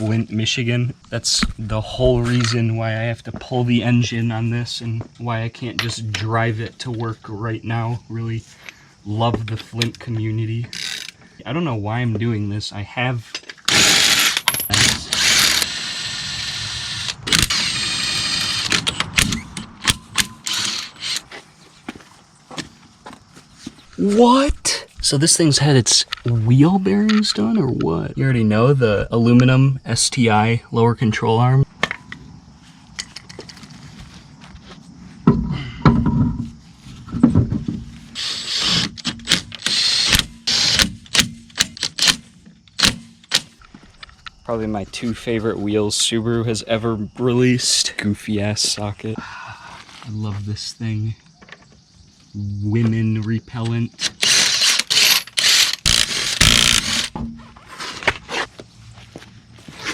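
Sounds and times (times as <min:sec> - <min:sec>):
electric power tool running: 0:13.7 - 0:18.9, 0:54.2 - 0:57.2
heavy thumps and clatter: 0:35.2 - 0:38.1, 0:55.9 - 0:57.6
sharp tool clicks on lug nuts: 0:39.0 - 0:43.5.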